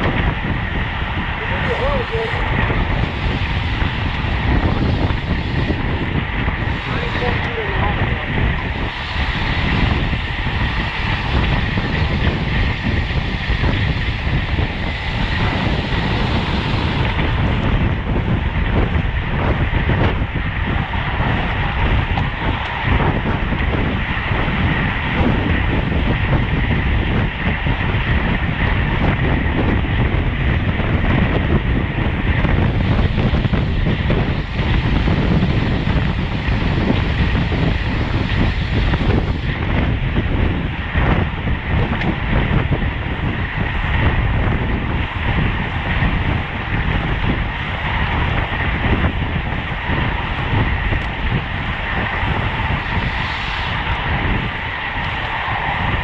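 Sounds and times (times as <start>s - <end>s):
bike tyre and road noise: 0.0s - 56.0s
wind rush over microphone: 0.0s - 56.0s.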